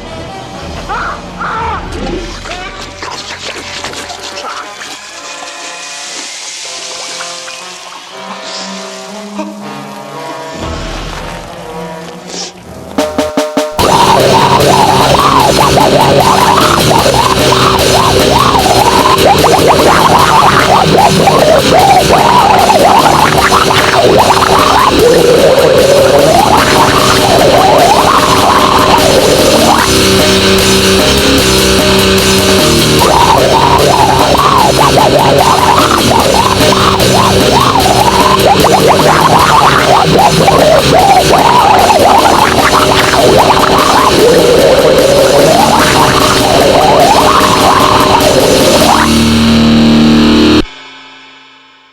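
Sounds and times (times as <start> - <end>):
distorted noise music: 0.0 - 51.9.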